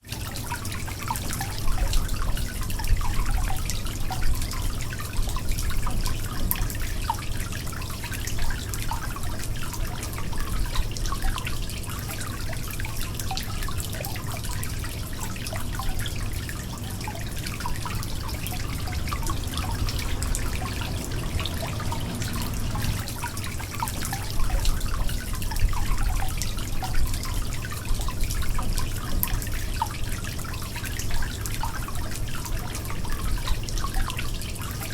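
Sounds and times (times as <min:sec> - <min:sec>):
water trickling and dripping: 0:00.0 - 0:34.9
steady low rumble: 0:18.0 - 0:23.1.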